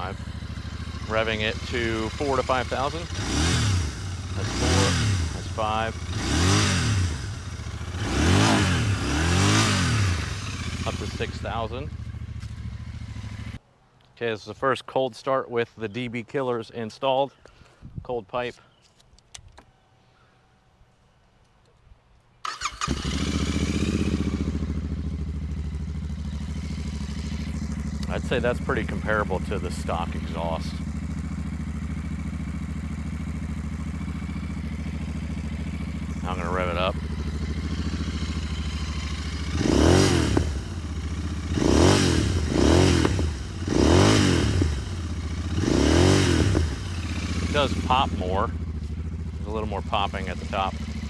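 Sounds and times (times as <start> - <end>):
exhaust popping: 0.0 - 13.6, 22.5 - 51.0
motorcycle engine idling: 0.0 - 13.6, 22.5 - 51.0
starter motor cranking: 22.5 - 23.6.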